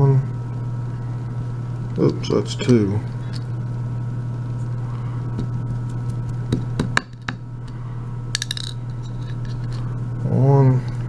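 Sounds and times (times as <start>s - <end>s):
steady low hum: 0.0s - 11.0s
metal pins clinking: 8.4s - 9.8s.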